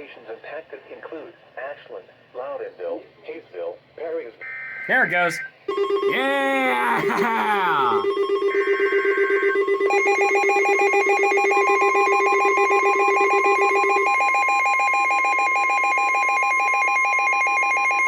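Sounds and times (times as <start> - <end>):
electronic alarm tones beeping: 4.4 - 18.0
steady warning alarm tone: 4.4 - 18.0.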